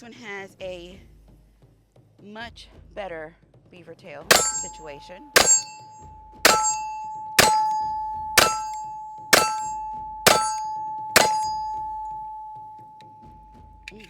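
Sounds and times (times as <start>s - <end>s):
steel target clanging: 4.3s - 14.0s.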